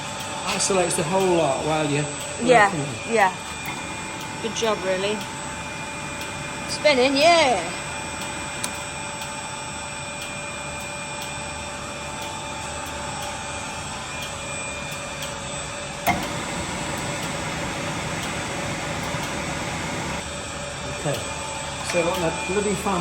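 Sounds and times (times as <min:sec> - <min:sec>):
electric motor humming: 0:01.9 - 0:09.2, 0:15.9 - 0:20.3.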